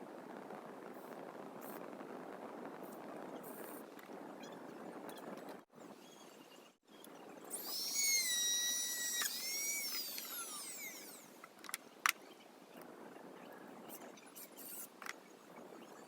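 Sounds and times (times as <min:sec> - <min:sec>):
small power tool motor whining: 0:07.0 - 0:11.5.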